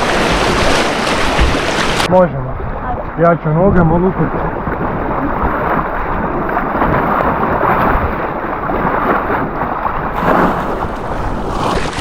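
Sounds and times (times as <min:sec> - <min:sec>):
wind buffeting microphone: 0:00.0 - 0:12.0
river water rushing: 0:10.1 - 0:12.0.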